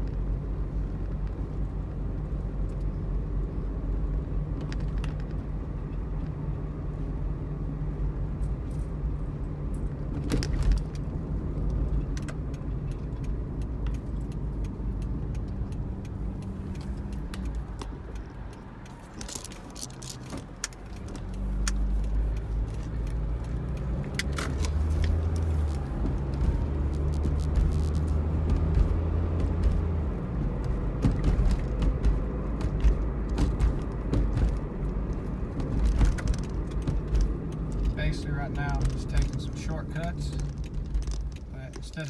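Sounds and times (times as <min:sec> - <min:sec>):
car engine and road rumble: 0:00.0 - 0:42.0
light clicks and rattles: 0:09.6 - 0:42.0.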